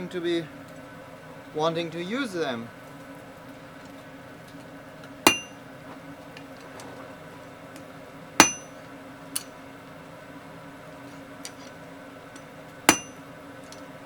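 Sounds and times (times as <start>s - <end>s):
steady low hum: 0.0s - 14.0s
metal-on-metal strikes: 5.3s - 5.6s, 8.4s - 8.8s, 12.9s - 13.2s.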